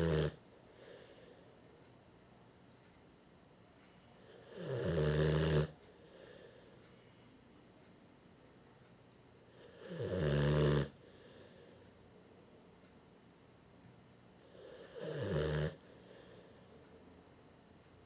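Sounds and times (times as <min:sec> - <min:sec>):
puppy snoring: 0:00.0 - 0:01.2, 0:04.2 - 0:06.6, 0:09.5 - 0:11.6, 0:14.4 - 0:16.6.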